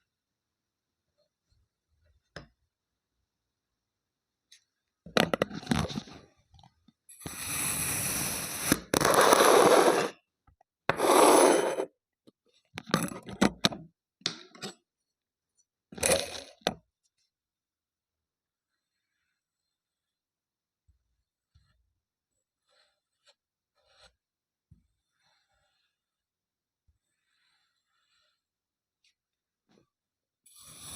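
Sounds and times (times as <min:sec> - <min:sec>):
kinetic sand being cut and scraped: 0:07.2 - 0:10.2, 0:30.5 - 0:30.9.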